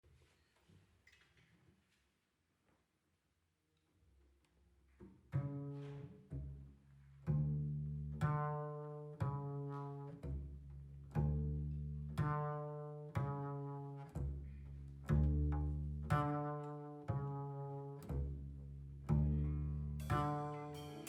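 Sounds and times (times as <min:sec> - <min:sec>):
double bass plucked pizzicato: 0:05.1 - 0:21.0.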